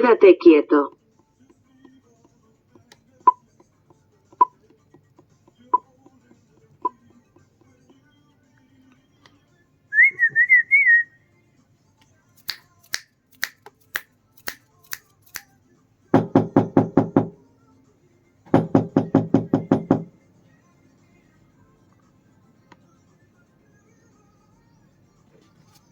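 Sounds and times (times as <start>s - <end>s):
finger snaps: 12.4s - 15.5s.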